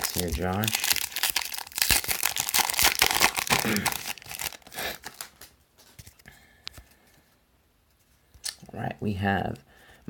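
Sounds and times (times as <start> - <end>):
wrapper tearing and crinkling: 0.0 - 5.5.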